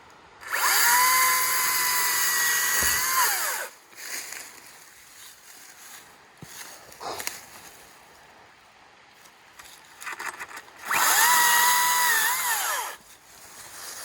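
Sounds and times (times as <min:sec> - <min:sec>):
battery chainsaw whining: 0:00.4 - 0:03.8, 0:10.8 - 0:13.0.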